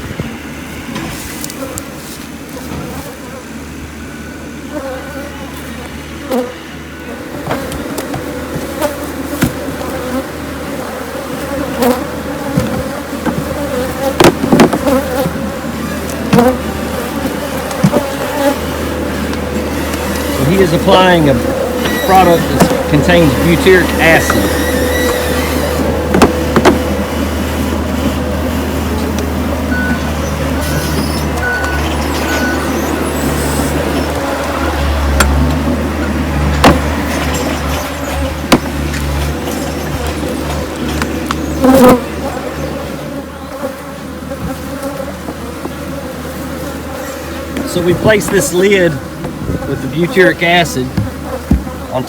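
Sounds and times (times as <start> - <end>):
honey bees buzzing: 0.0 - 52.0
sharp knocks: 14.2 - 14.9, 24.2 - 26.9, 51.0 - 51.8
truck engine idling: 15.3 - 43.4
short high beeps: 21.8 - 22.5, 29.7 - 32.8.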